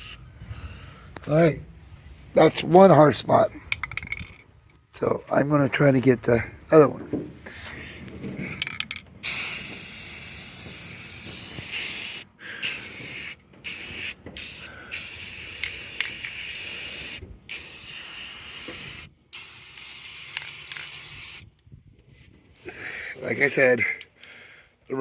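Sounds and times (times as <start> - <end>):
paint spray hissing: 0.0 - 0.2, 9.2 - 21.4.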